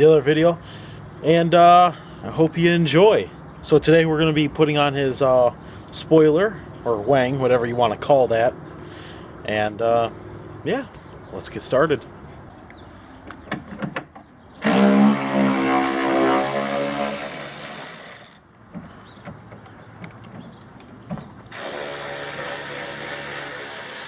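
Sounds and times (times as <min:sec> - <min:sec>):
power tool motor whining: 0:14.6 - 0:18.4, 0:21.5 - 0:24.0.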